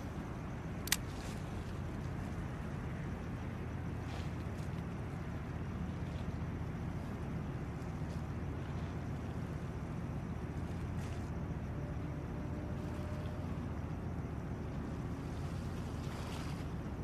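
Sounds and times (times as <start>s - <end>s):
low rumbling noise: 0.0s - 17.0s.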